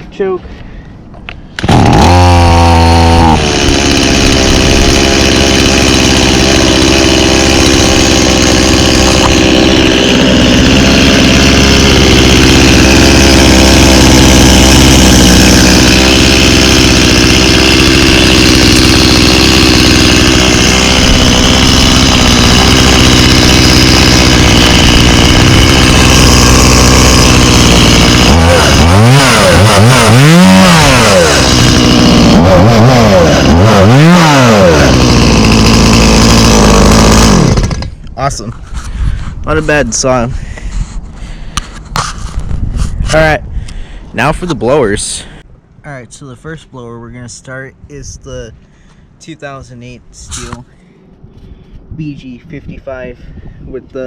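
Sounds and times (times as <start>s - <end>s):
chainsaw engine running and revving: 1.6s - 38.0s.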